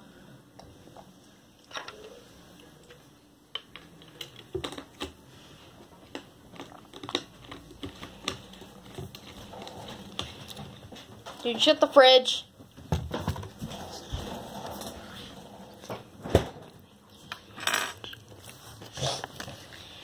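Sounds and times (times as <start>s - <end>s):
food containers clicking and knocking: 3.6s - 5.2s, 6.0s - 11.4s.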